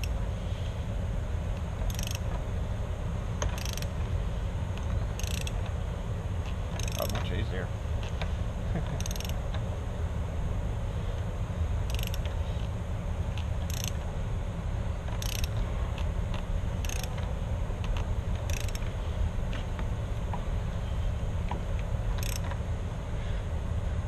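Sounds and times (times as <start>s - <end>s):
steady low hum: 0.0s - 24.0s
ratchet wrench clicking: 1.8s - 2.3s, 3.4s - 3.9s, 4.8s - 5.7s, 6.7s - 7.2s, 9.0s - 9.4s, 11.9s - 12.4s, 13.6s - 14.0s, 15.1s - 15.6s, 16.8s - 17.3s, 18.4s - 19.0s, 22.1s - 22.6s.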